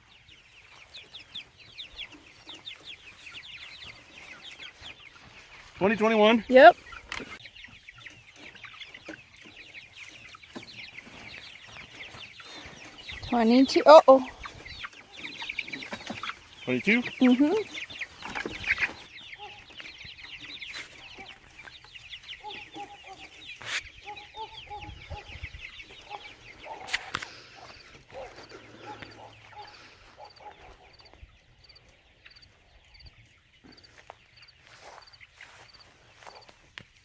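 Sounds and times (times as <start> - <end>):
chickens clucking: 0.0 - 37.0.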